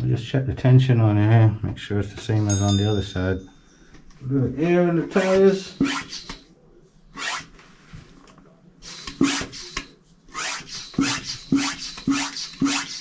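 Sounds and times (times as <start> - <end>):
hand air pump hissing: 5.7 - 6.4, 8.8 - 13.0.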